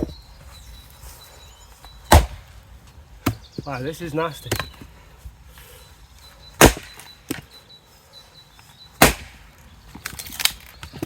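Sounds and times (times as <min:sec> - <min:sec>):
axe blows into firewood: 0:09.0 - 0:09.4.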